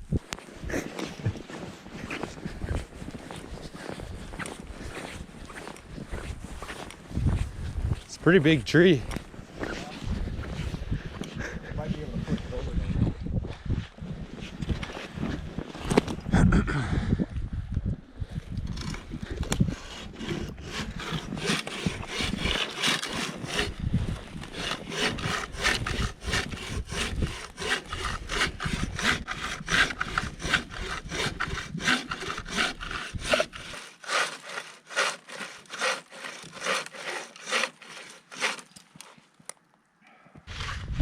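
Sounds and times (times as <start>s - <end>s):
hand saw cutting wood: 18.7s - 39.2s, 40.5s - 40.9s.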